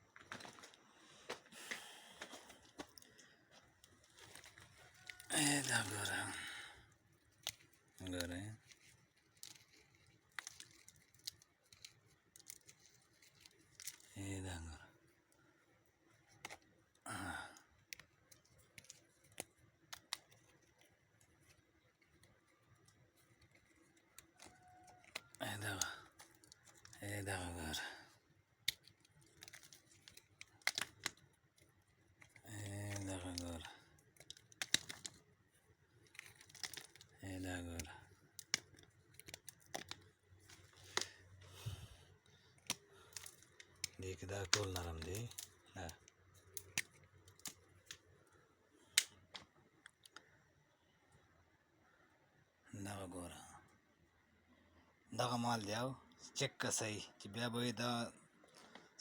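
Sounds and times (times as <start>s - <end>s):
breath out: 1.0s - 2.5s, 40.8s - 42.1s
stones clicking together: 1.7s - 14.2s, 15.8s - 50.3s.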